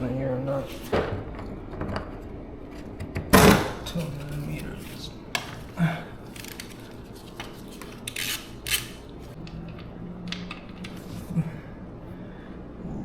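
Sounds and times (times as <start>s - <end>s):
socket wrench clinks and clicks: 8.1s - 9.0s.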